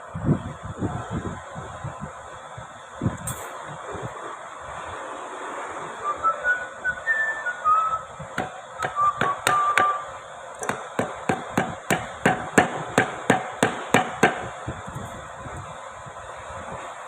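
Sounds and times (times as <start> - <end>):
hammer tapping metal blade: 8.4 - 14.5.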